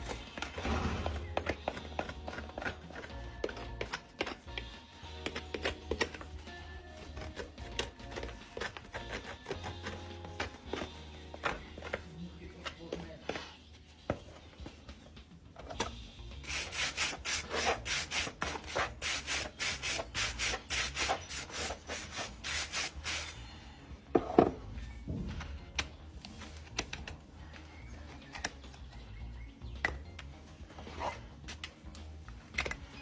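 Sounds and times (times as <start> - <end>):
rasp filing a hoof: 0.0 - 6.2, 7.1 - 10.5.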